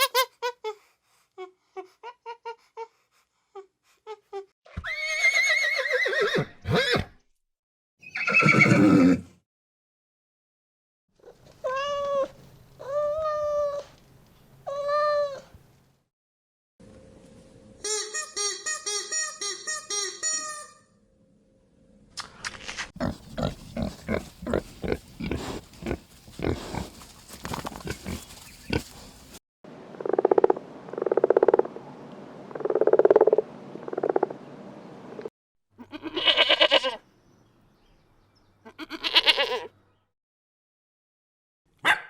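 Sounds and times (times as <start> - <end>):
farm animals calling: 23.0 - 29.4, 35.8 - 37.0, 38.6 - 39.7.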